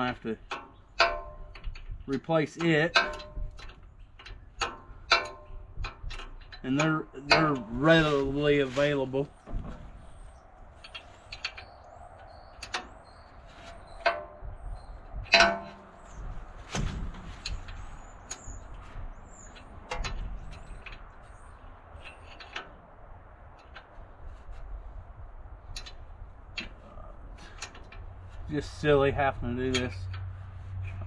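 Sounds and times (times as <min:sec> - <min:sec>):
metal hand tools clanking: 0:00.0 - 0:09.3, 0:15.3 - 0:16.2.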